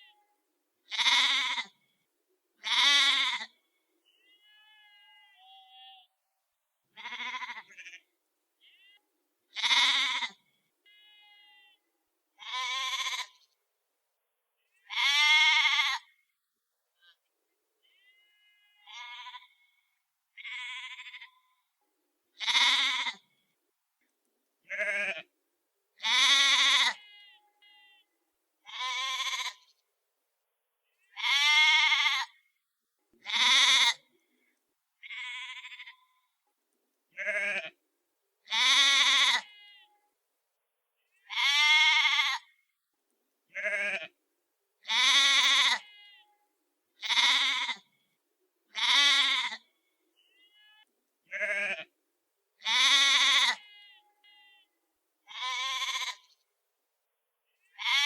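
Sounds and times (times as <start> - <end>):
sheep bleating: 0.9 - 1.8, 2.6 - 6.2, 6.9 - 11.8, 12.4 - 13.5, 14.8 - 16.2, 17.8 - 21.6, 22.4 - 23.3, 24.7 - 25.3, 26.0 - 29.8, 31.0 - 32.4, 33.2 - 34.0, 35.0 - 36.3, 37.2 - 37.8, 38.4 - 40.0, 41.2 - 42.6, 43.5 - 44.2, 44.8 - 46.4, 47.0 - 47.9, 48.7 - 49.7, 50.3 - 51.9, 52.6 - 54.7, 55.3 - 56.4, 57.8 - 58.0.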